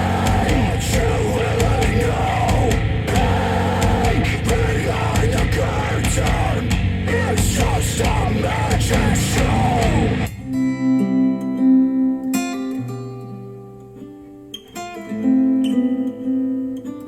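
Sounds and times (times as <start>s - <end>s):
hard rock music with vocals: 0.0s - 10.6s
strummed acoustic guitar: 0.0s - 17.0s.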